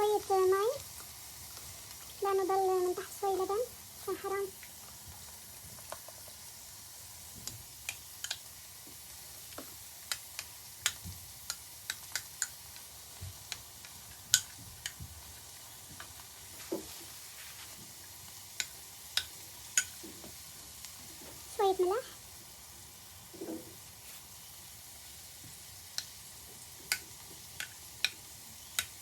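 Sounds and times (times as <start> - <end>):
stew sizzling in pot: 0.0 - 29.0
sharp clicks and ticks: 10.1 - 12.9.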